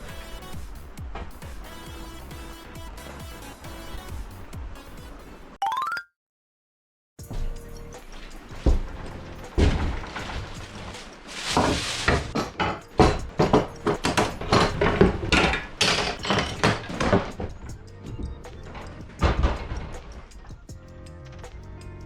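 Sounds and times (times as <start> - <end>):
knocks and clunks of tools: 7.4 - 20.6.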